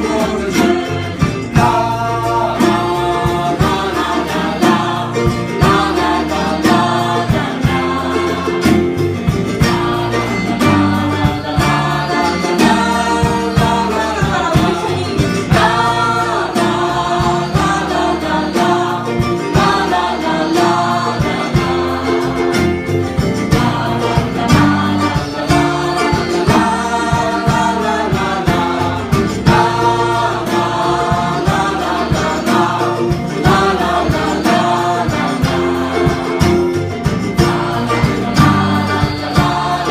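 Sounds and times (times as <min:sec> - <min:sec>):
acoustic guitar strummed and plucked: 0:00.0 - 0:39.9
person singing: 0:09.6 - 0:22.6.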